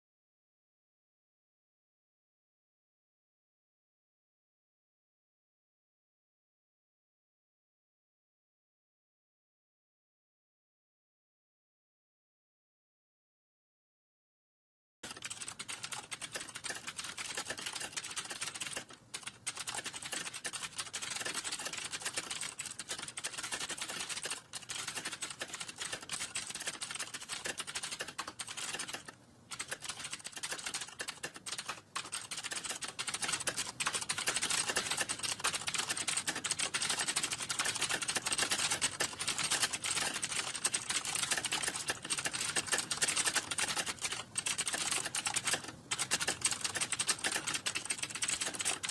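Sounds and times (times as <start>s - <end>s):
fast typing on keyboard: 15.0s - 48.9s.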